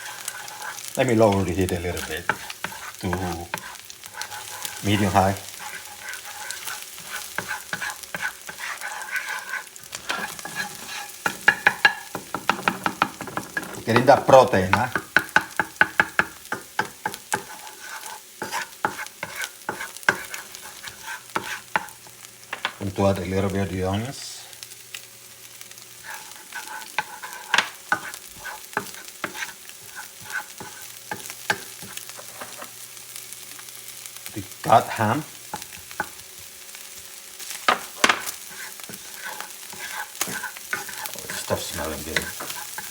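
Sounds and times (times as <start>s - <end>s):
utensil scraping pan: 0.0s - 22.0s, 26.0s - 32.7s, 37.5s - 42.9s
egg sizzling in pan: 0.0s - 42.9s.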